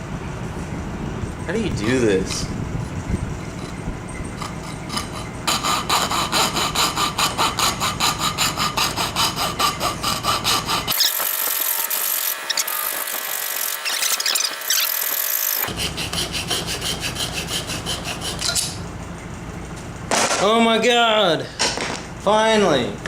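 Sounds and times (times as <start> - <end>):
hand saw cutting wood: 4.4 - 18.8.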